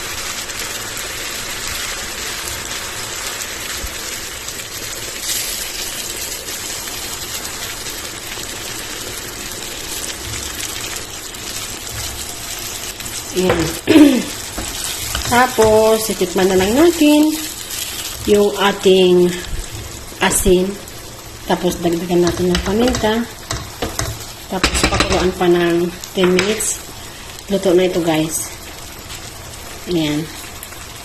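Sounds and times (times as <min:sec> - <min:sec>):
meat and sauce sizzling in a pan: 0:00.0 - 0:31.0.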